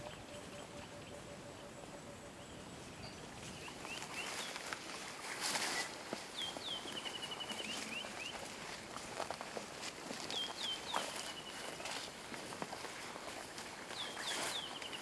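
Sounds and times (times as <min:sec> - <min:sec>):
rustles and ticks: 0:03.4 - 0:15.0.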